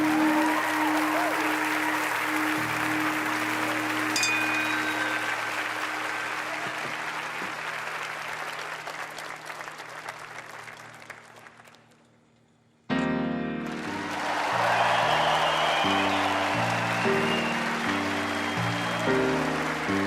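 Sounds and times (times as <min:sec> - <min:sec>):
background music: 0:00.0 - 0:08.2, 0:12.9 - 0:20.0
audience applauding: 0:00.0 - 0:12.1, 0:13.6 - 0:20.0.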